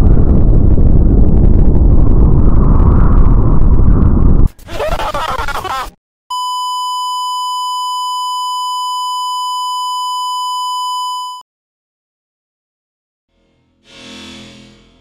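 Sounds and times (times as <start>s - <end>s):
steady electronic tone: 13.4s - 15.0s.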